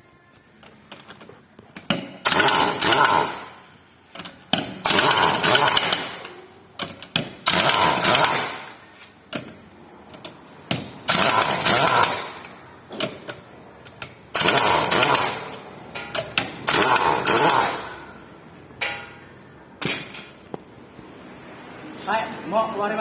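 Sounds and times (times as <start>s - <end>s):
impact wrench running: 1.8s - 9.6s, 10.7s - 19.0s.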